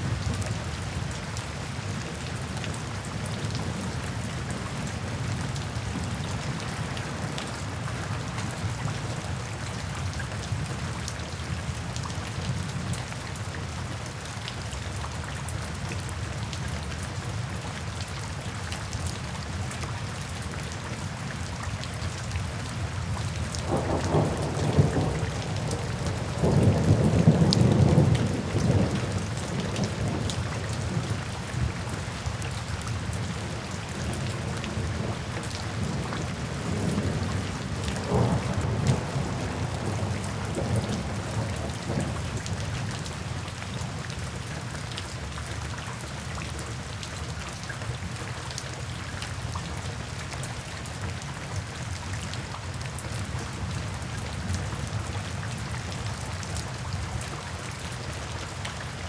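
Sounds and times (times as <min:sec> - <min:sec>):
steady rain falling: 0:00.0 - 0:59.0
rolling thunder: 0:23.6 - 0:31.7, 0:34.4 - 0:42.6.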